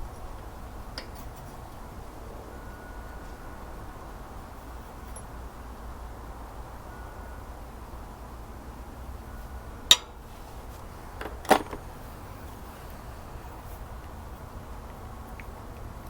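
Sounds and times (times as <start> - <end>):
light metal tap: 9.9 - 10.2.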